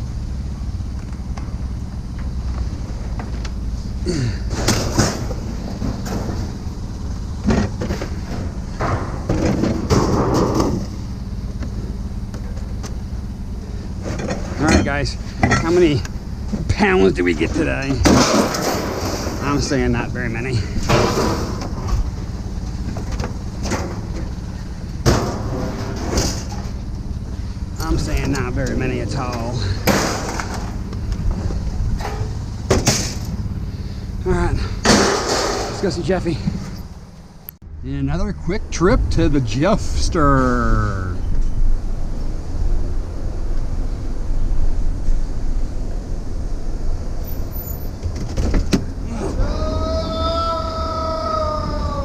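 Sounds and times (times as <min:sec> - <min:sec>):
vehicle engine humming: 0:00.0 - 0:52.0
clanks and rattles: 0:04.3 - 0:19.8, 0:20.6 - 0:37.3, 0:47.4 - 0:49.0.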